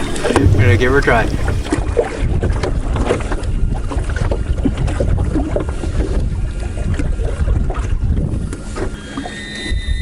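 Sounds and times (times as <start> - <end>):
wind rumbling on microphone: 0.0 - 9.0
light water sounds: 0.0 - 9.3.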